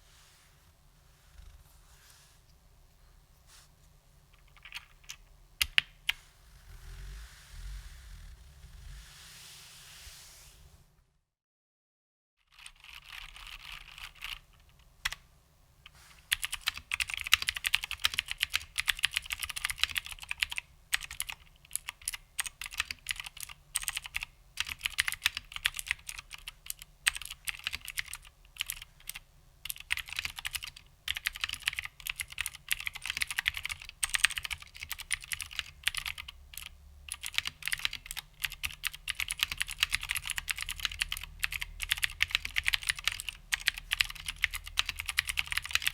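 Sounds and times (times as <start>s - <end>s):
clicky keyboard typing: 4.4s - 6.1s, 16.3s - 45.9s.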